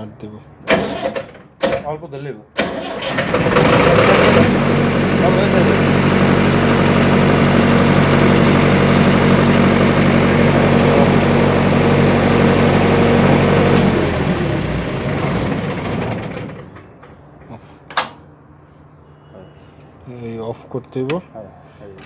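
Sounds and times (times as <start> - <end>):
diesel generator running: 0.6 - 1.8, 2.6 - 17.0
sharp click: 17.9 - 18.2.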